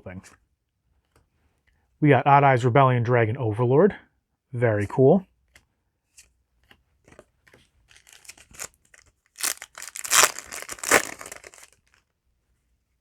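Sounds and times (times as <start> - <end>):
foil wrapper crinkling and tearing: 7.9 - 12.0.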